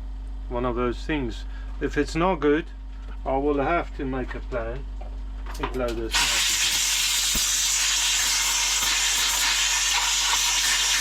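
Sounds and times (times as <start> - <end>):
compressed air hissing: 6.1 - 11.0.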